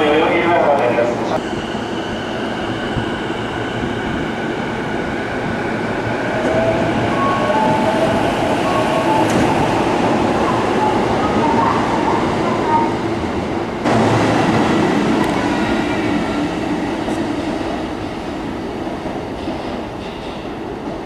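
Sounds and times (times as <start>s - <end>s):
train rolling noise: 0.0s - 21.0s.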